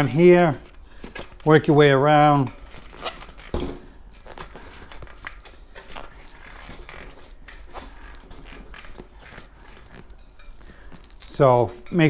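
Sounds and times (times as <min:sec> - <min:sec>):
tire rubbing and scraping on rim: 0:00.0 - 0:12.0
small creaks and clicks: 0:02.6 - 0:11.4.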